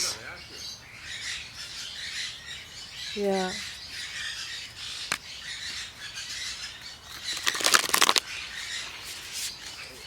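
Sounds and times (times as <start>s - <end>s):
faint bird twittering: 0.0s - 10.0s
rapid fluttering clicks: 7.3s - 8.2s.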